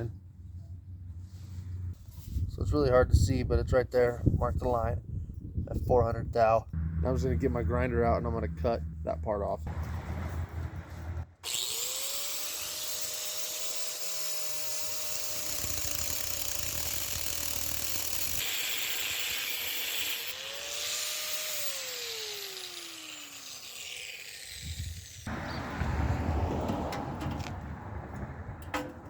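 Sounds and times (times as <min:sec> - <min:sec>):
angle grinder cutting metal: 0:06.8 - 0:25.3.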